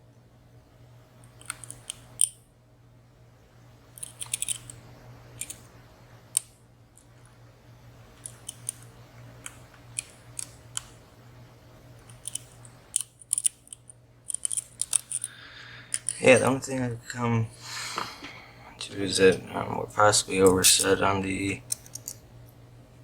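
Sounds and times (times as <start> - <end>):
lock picks clicking in padlock: 1.3 - 2.4, 4.0 - 4.7, 12.1 - 15.3, 15.9 - 16.2, 21.7 - 22.2.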